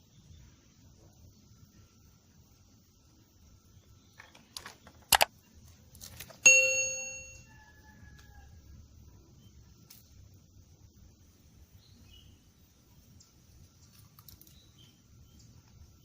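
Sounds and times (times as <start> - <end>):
sharp clicks and knocks: 4.2 - 5.3
metallic ding ringing: 6.5 - 7.5.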